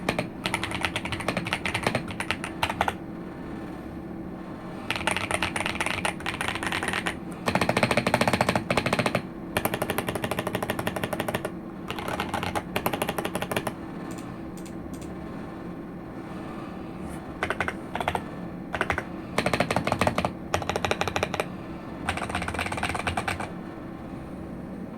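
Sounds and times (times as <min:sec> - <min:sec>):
mechanical keyboard typing: 0:00.0 - 0:03.0, 0:04.9 - 0:15.2, 0:17.4 - 0:23.5.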